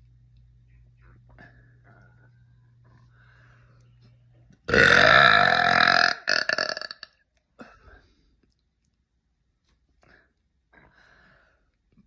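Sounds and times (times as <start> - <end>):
woman burping: 4.7 - 7.7.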